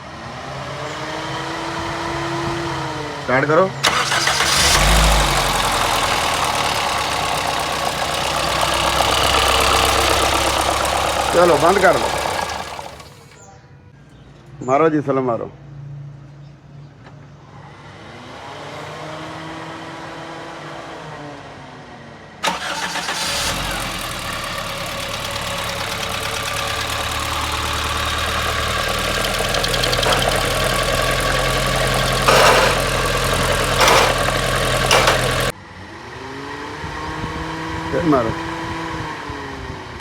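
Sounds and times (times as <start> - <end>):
car engine cranking on starter: 3.8 - 13.4, 22.4 - 35.5
car engine running: 3.8 - 13.4, 22.4 - 35.5.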